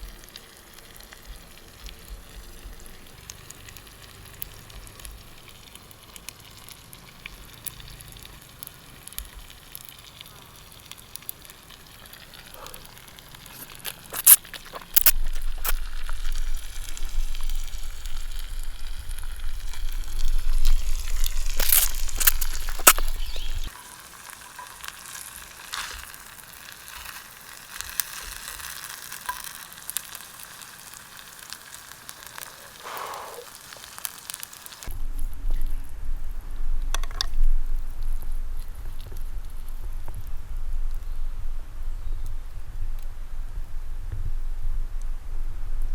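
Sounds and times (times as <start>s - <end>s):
fire pops and clicks: 0.0s - 23.8s, 36.8s - 41.1s
food sizzling over campfire: 0.0s - 45.9s.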